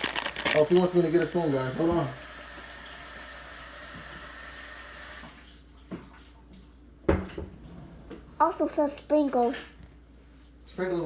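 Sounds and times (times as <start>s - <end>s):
tap water running: 0.0s - 7.5s.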